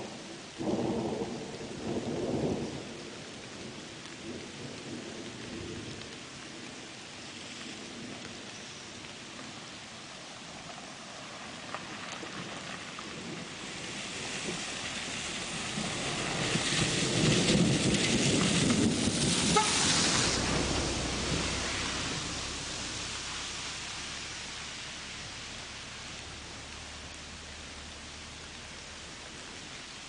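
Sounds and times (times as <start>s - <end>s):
steady rain: 0.0s - 30.0s
thunder rolling: 12.3s - 24.2s.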